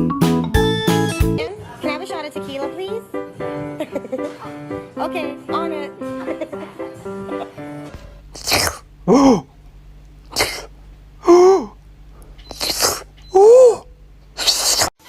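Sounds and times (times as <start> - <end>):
animal breathy sneezes: 8.4 - 8.9, 10.3 - 10.7, 12.5 - 13.1, 14.4 - 15.0.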